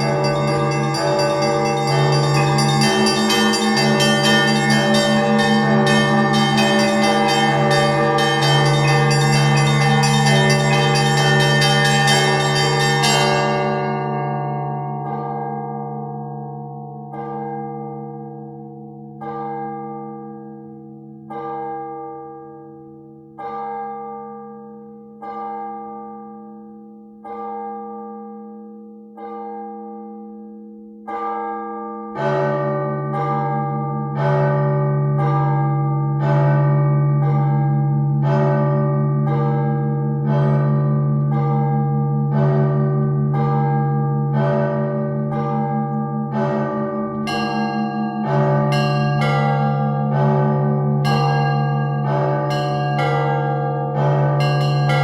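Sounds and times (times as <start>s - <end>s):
deep bell hum: 0.0s - 17.2s, 32.8s - 55.0s
church bells ringing: 0.0s - 55.0s.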